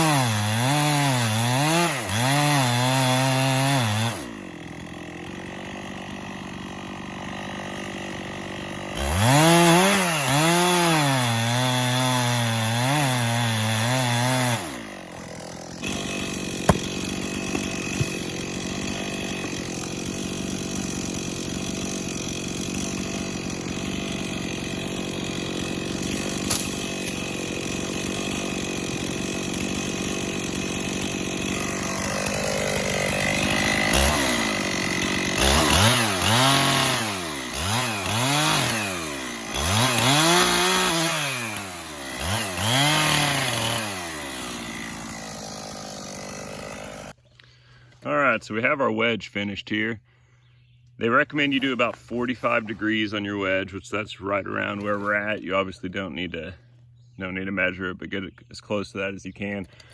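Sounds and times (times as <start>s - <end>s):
chainsaw cutting tree trunk: 0.0s - 47.9s
sharp knocks: 16.6s - 18.4s.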